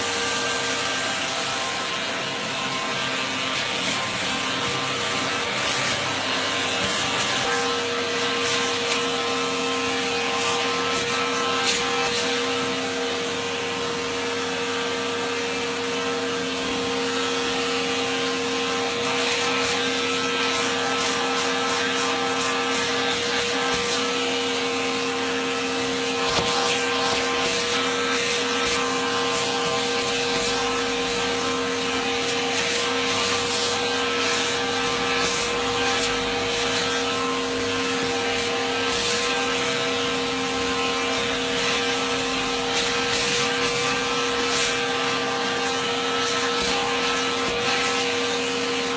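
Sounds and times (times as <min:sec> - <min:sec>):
fabric scraping over cutting heads: 0:18.7 - 0:48.9.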